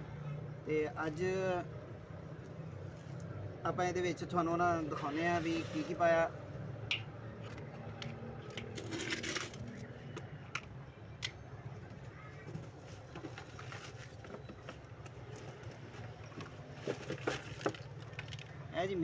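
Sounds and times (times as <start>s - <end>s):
rustling of feed and containers: 12.0s - 18.6s.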